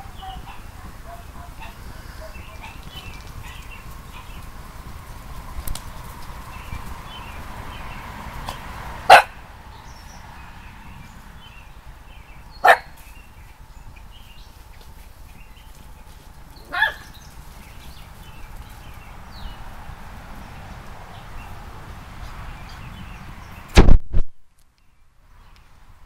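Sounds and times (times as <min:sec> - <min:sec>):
dog barking: 0:00.0 - 0:04.4, 0:09.1 - 0:09.4, 0:12.6 - 0:13.0, 0:16.7 - 0:17.1.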